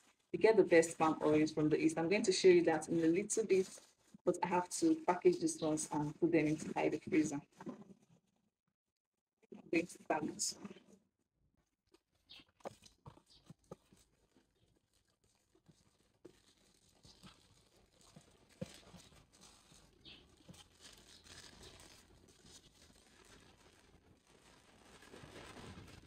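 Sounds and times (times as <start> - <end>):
plastic bags crinkling: 12.3 - 26.0.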